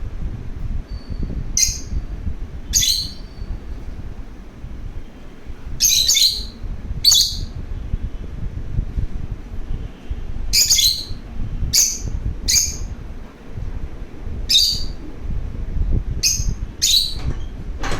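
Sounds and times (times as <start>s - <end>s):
lovebird chirping: 0.9s - 2.0s, 2.6s - 3.6s, 5.8s - 7.6s, 10.5s - 13.0s, 14.5s - 15.0s, 16.2s - 17.5s.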